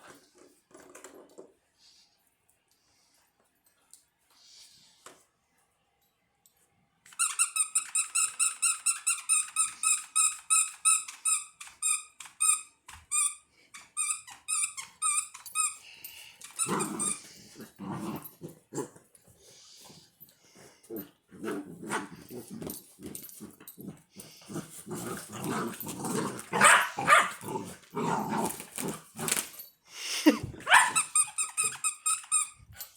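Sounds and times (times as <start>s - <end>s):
puppies play growling: 16.5s - 29.6s
puppies barking: 26.5s - 27.5s.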